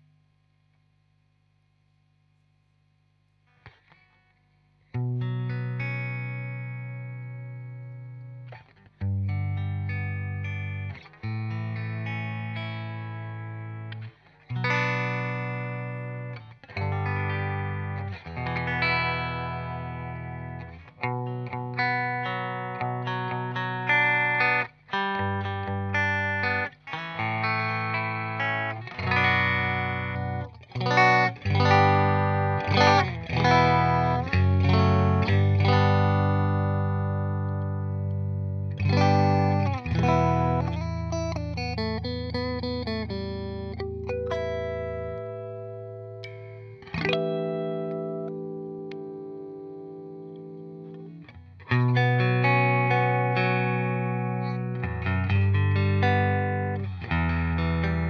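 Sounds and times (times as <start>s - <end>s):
electric guitar chords ringing: 4.9s - 58.0s.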